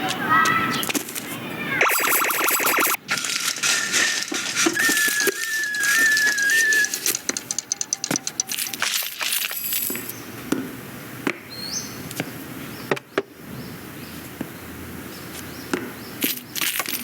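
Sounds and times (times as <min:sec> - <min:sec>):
thin high tone rising: 0:01.8 - 0:03.0
small clicks taps and knocks: 0:06.8 - 0:08.9.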